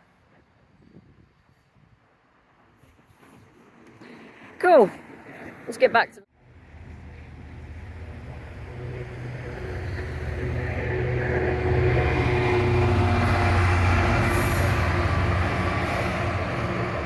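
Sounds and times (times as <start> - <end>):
train wagons rumbling past: 2.0 - 17.0.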